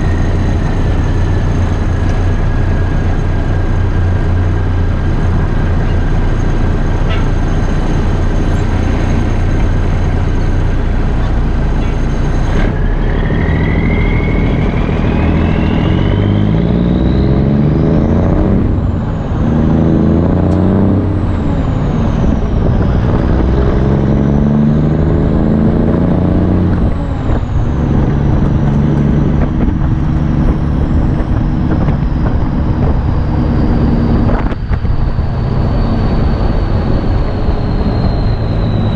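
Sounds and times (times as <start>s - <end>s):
diesel engine revving: 0.0s - 38.9s
turbo whistle: 11.8s - 17.5s, 35.0s - 38.9s.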